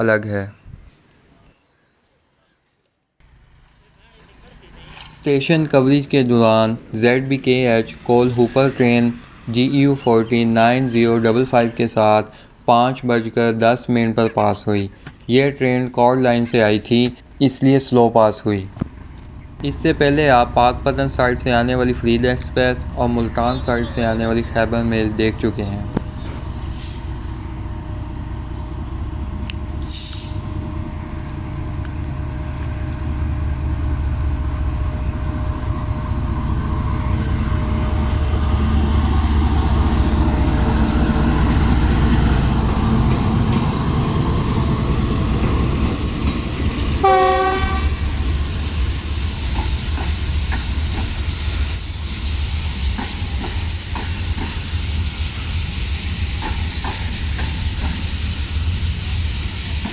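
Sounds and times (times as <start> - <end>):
diesel locomotive rumble: 3.2 - 59.9
train wagons clattering: 18.7 - 27.8, 38.3 - 59.9
train horn blast: 47.0 - 48.1.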